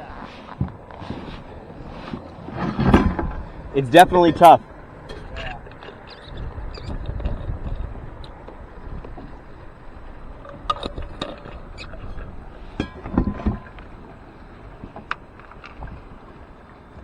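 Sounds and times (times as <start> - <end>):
dull thumps against hull: 0.0 - 3.8
water lapping: 0.0 - 17.0
wind: 0.0 - 17.0.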